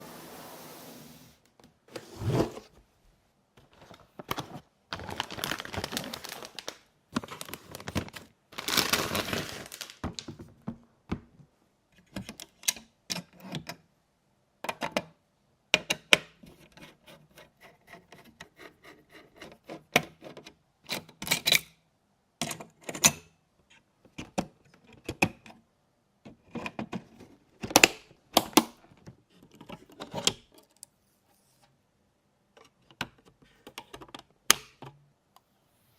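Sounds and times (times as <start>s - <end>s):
packaging rustling: 3.7s - 10.3s.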